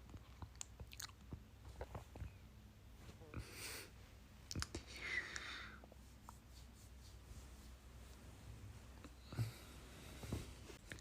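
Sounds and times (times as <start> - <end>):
quiet low hum: 0.0 - 11.0
soft breath close to microphone: 4.8 - 6.2, 7.1 - 10.8.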